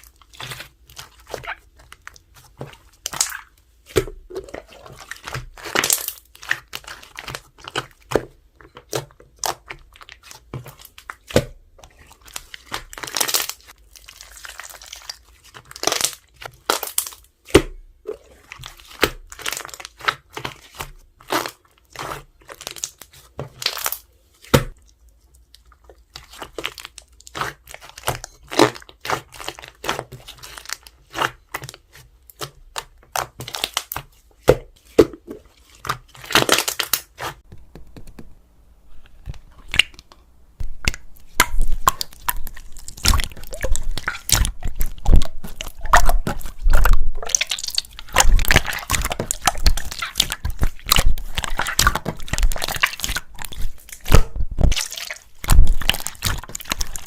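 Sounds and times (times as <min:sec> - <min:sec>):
hands squishing slime: 0:00.0 - 0:38.3, 0:38.9 - 0:57.0.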